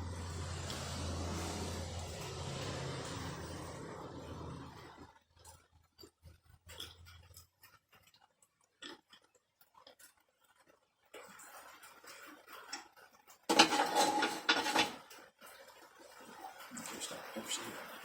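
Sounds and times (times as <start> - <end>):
loud grating rattling clatter: 13.5 - 15.1.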